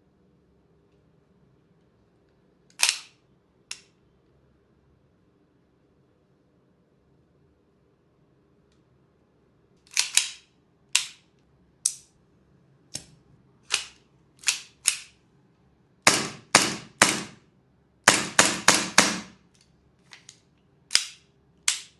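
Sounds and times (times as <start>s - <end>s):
airsoft pistol shots: 16.1s - 17.4s, 18.1s - 19.4s.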